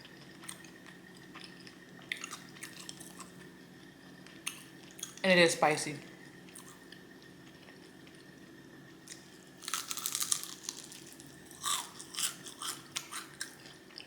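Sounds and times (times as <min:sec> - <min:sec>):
chewing: 0:00.0 - 0:05.2, 0:09.1 - 0:14.0
crunching bites into fried chicken: 0:09.0 - 0:13.8.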